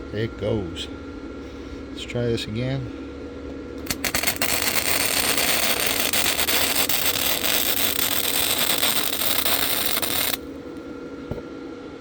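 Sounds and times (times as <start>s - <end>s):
welder arc strikes: 3.8s - 10.4s
welder arc crackling: 3.8s - 10.5s.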